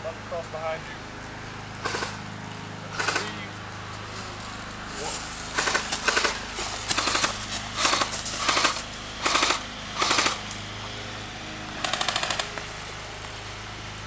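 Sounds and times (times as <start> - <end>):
airsoft guns firing bursts: 1.8 - 2.2, 2.9 - 3.4, 5.6 - 10.4, 11.8 - 12.5.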